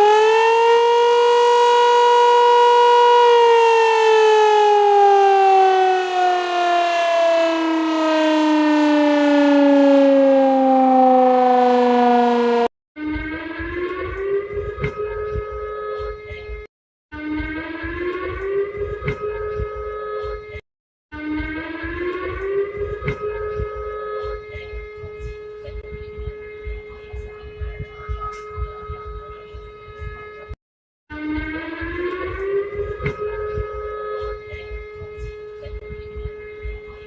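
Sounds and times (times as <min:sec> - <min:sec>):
siren rising in pitch: 0:00.0 - 0:16.1, 0:17.1 - 0:25.2, 0:27.6 - 0:36.4
warning siren: 0:00.0 - 0:16.5, 0:17.1 - 0:37.0.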